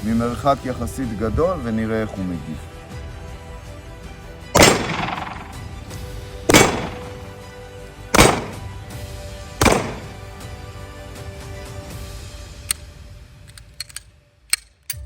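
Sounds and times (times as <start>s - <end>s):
background music: 0.0s - 15.0s
pistol shots echoing: 4.6s - 5.9s, 6.5s - 7.4s, 8.2s - 9.0s, 9.6s - 10.3s.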